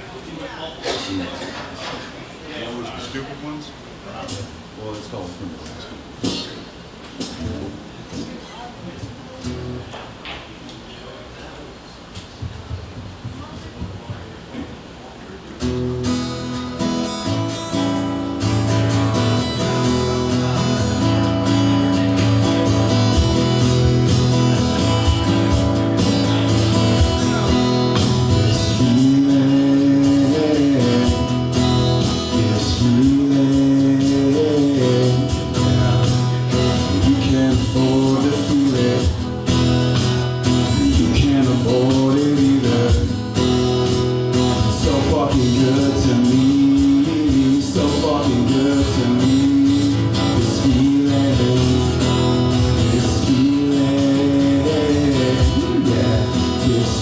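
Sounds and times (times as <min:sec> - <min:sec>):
strummed acoustic guitar: 0:06.1 - 0:10.2, 0:15.6 - 0:57.0
steady low bass: 0:18.4 - 0:42.0.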